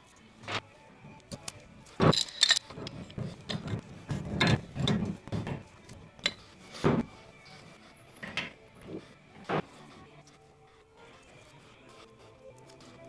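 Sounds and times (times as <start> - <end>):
metal parts clinking: 1.9 - 3.7
metal parts knocking and rattling: 1.9 - 5.3.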